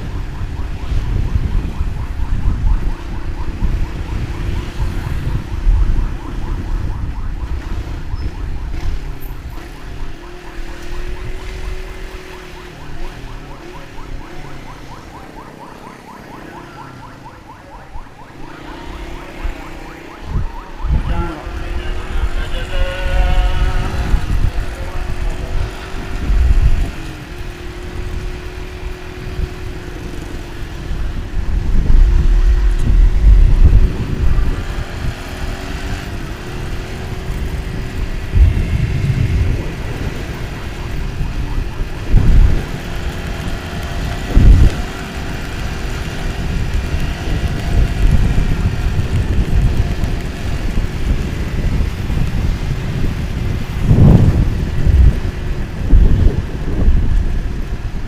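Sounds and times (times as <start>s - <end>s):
road rumble: 0.0s - 58.0s
motorcycle engine running: 18.5s - 58.0s.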